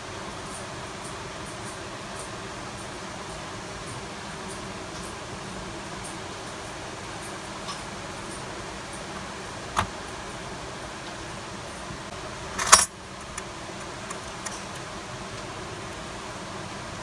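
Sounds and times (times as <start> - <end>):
metallic clatter: 12.5 - 14.8.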